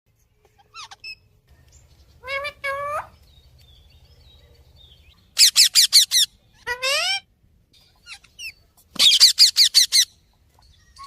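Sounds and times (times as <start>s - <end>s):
parrots calling: 0.5s - 1.3s, 2.2s - 3.2s, 5.2s - 7.3s, 8.0s - 10.2s
harsh parrot squawks: 5.4s - 7.3s, 9.0s - 10.1s.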